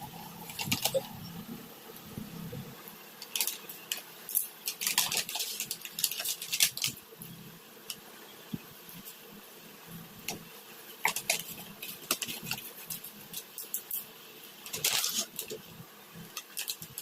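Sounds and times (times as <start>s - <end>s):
packaging clicks and crinkles: 3.2s - 8.0s, 11.0s - 15.6s, 16.2s - 17.0s.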